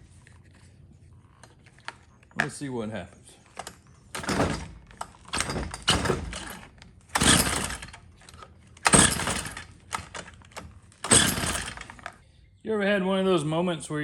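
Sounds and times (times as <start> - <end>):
engine cranking without firing: 3.5 - 12.2
recoil starter being pulled: 3.5 - 12.2.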